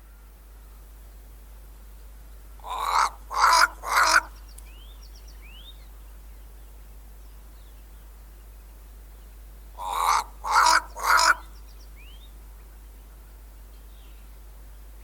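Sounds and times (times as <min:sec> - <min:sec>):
crow cawing: 0:02.6 - 0:04.3, 0:09.8 - 0:11.5.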